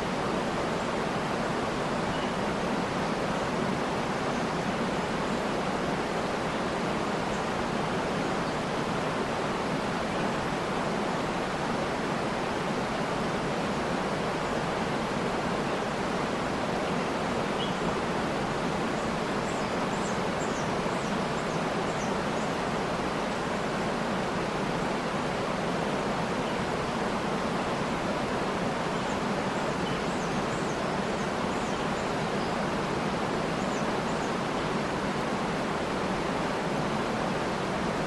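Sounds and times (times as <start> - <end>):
waterfall rushing: 0.0 - 38.0
faint bird chirps: 2.0 - 2.6, 17.5 - 17.9, 28.9 - 32.7.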